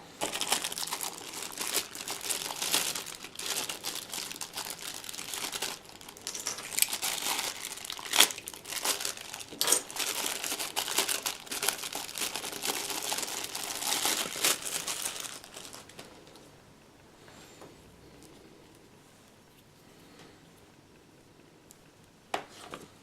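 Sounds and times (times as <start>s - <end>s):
packaging crinkling and crackling: 0.0s - 16.4s.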